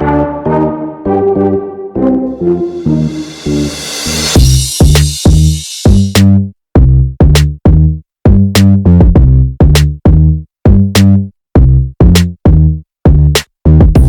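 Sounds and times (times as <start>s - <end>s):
heavy bass notes: 0.0s - 14.0s
electronic music with drum-machine beat: 2.4s - 6.2s.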